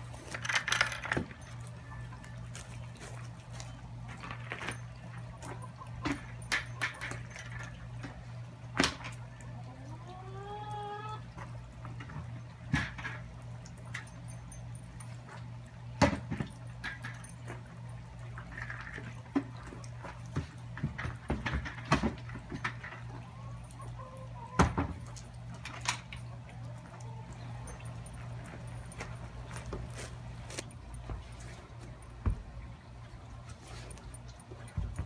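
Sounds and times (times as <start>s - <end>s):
chickens pecking and knocking: 0.0s - 13.3s, 15.4s - 35.0s.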